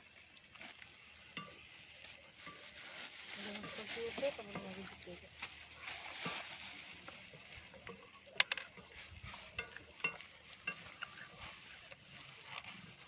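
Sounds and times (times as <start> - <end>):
faint hiss: 0.0 - 13.0
utensil scraping metal pan: 7.9 - 13.0.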